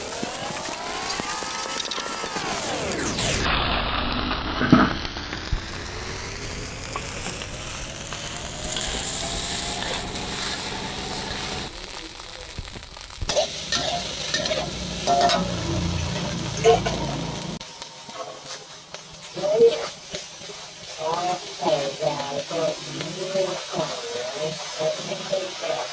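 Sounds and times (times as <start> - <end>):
rice sizzling in a wok: 0.0 - 25.9
spatula scraping and knocking wok: 6.9 - 11.7, 13.3 - 25.3.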